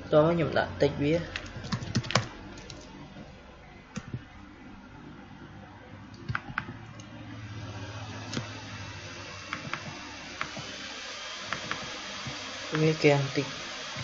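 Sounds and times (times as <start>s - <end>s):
keyboard keys clicking: 1.4s - 2.8s, 6.2s - 6.8s.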